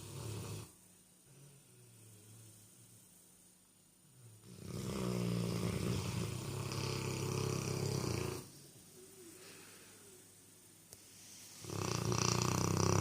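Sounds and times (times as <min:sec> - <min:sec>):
dog snoring: 0:00.0 - 0:02.4, 0:04.2 - 0:08.5, 0:11.6 - 0:13.0.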